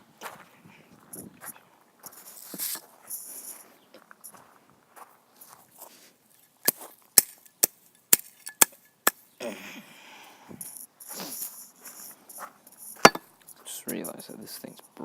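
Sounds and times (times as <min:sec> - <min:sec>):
brief rustle: 0:02.1 - 0:03.7.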